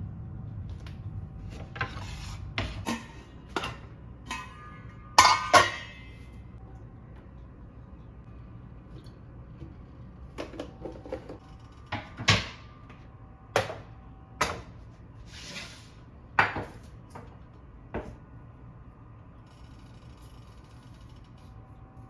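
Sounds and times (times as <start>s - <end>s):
dishes knocking and clinking: 2.6s - 6.2s.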